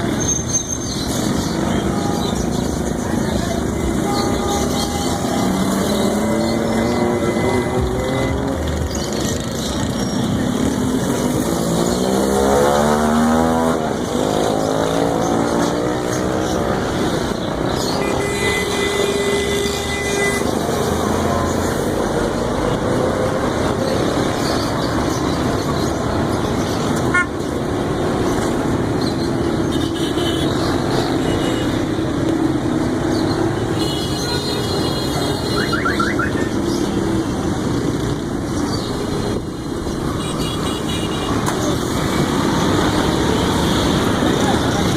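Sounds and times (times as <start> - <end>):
street traffic passing: 0.0 - 44.9
motorcycle engine revving: 2.4 - 24.9
vehicle horn: 3.8 - 8.6, 18.0 - 20.6, 27.1 - 27.4.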